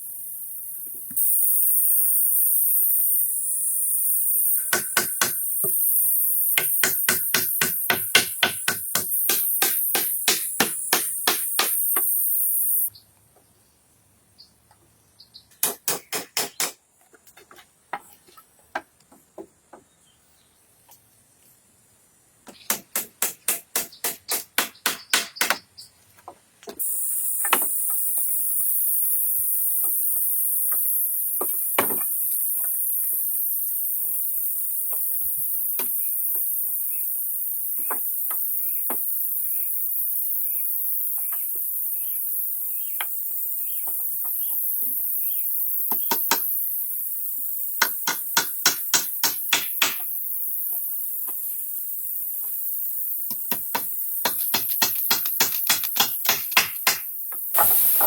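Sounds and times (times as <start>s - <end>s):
steady high-pitched hiss: 0.0s - 58.0s
hand tools striking wood: 4.6s - 5.8s, 6.6s - 12.2s, 15.6s - 16.8s, 22.5s - 26.8s, 27.4s - 27.8s, 31.4s - 32.8s, 45.9s - 46.5s, 47.8s - 50.1s, 53.3s - 58.0s.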